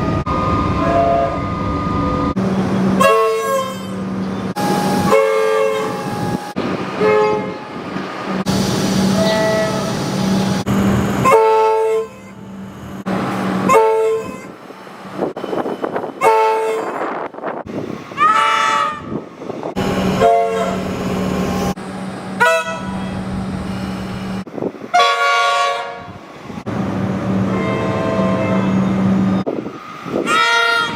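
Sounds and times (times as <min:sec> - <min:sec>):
train horn blasts: 0:00.8 - 0:01.4, 0:03.0 - 0:04.0, 0:04.6 - 0:07.6, 0:11.2 - 0:12.4, 0:13.6 - 0:14.5, 0:16.2 - 0:17.2, 0:18.2 - 0:19.2, 0:20.1 - 0:20.9, 0:22.4 - 0:23.2, 0:24.9 - 0:26.2, 0:27.4 - 0:29.0, 0:30.2 - 0:30.9.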